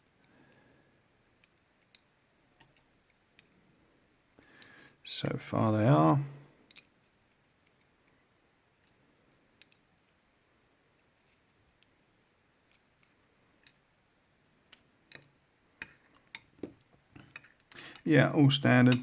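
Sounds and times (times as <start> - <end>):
small metal clicks: 1.4 - 3.5, 6.6 - 8.2, 9.6 - 10.2, 14.7 - 18.0.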